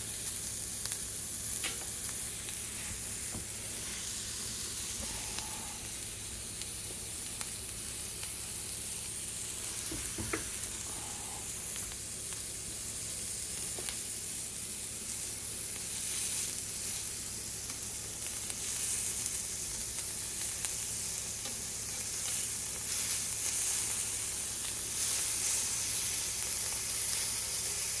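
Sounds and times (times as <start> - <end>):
food sizzling in a pan: 0.0 - 28.0.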